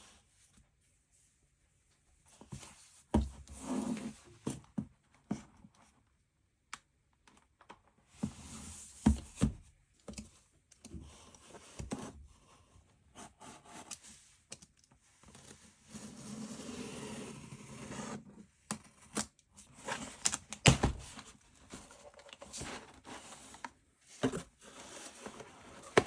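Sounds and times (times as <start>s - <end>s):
packaging rustling and scraping: 19.7s - 26.0s.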